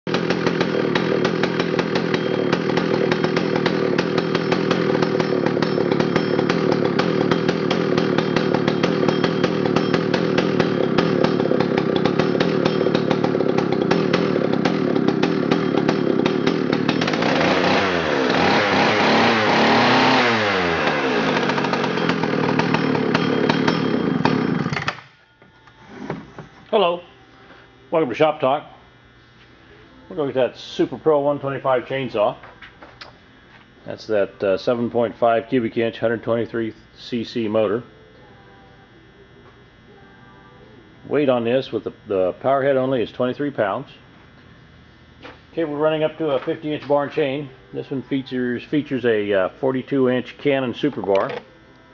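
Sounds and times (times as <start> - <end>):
chainsaw engine revving: 0.1 - 25.1.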